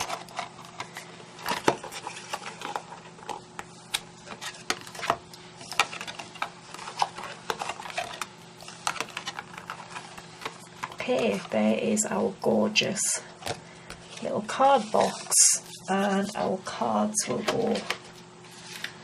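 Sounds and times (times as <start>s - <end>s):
cardstock tapping and crackling: 0.0s - 11.8s
faint steady hum: 0.0s - 19.0s.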